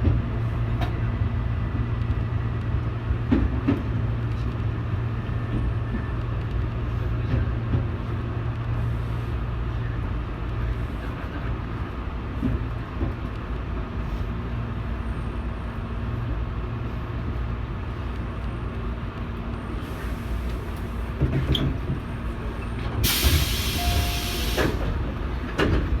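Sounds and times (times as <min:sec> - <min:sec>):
train low rumble: 0:00.0 - 0:26.0
compressed air hiss: 0:23.0 - 0:24.8.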